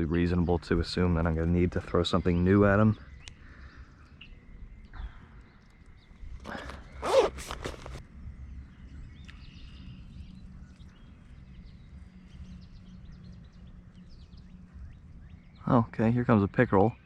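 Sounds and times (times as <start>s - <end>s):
low outdoor rumble: 0.0s - 17.0s
faint bird chirps: 1.8s - 7.3s.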